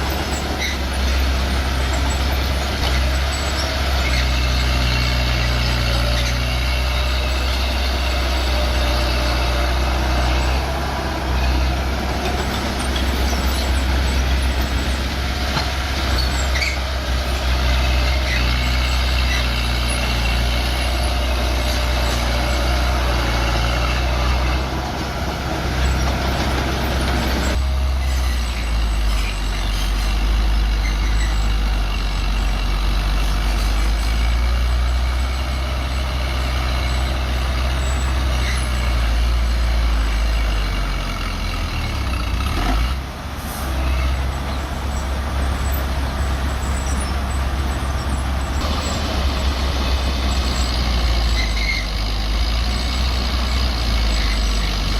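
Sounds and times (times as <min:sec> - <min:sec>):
bulldozer diesel engine running: 0:00.0 - 0:54.9.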